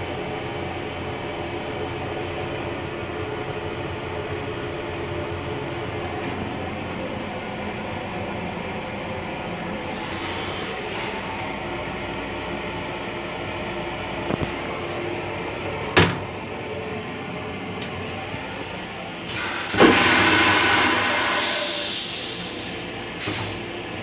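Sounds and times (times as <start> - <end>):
railcar rumbling: 0.0 - 24.0
toilet flushing: 3.6 - 12.7, 13.6 - 24.0.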